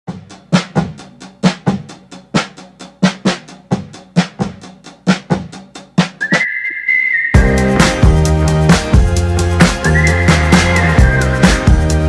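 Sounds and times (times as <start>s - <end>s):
kick drum: 7.4s - 9.8s.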